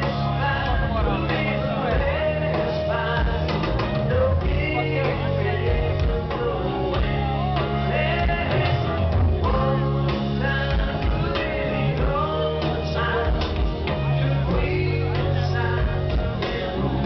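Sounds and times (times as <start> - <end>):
bass: 0.0 - 17.0
drums: 0.0 - 17.0
electric guitars: 0.0 - 17.0
person singing lead vocal: 0.0 - 17.0.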